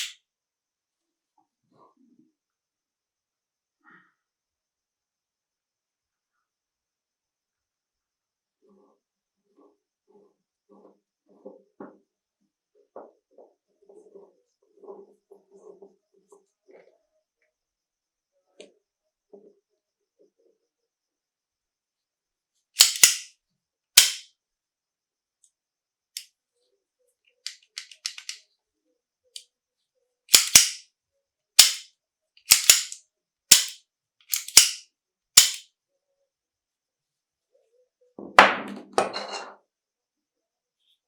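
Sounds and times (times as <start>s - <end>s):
pistol action metal clacks: 22.8s - 23.3s, 24.0s - 24.2s, 27.5s - 28.4s, 30.3s - 30.8s, 31.6s - 31.8s, 32.4s - 34.8s, 35.4s - 35.6s.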